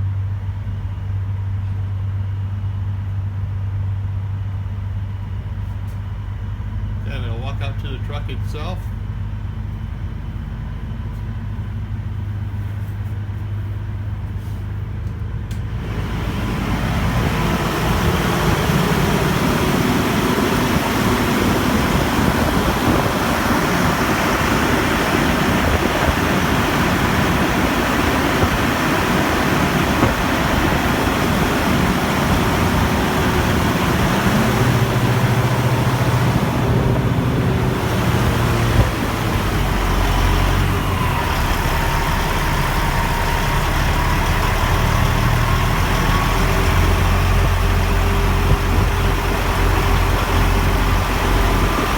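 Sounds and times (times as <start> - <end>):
truck running on rollers: 15.7 - 51.9.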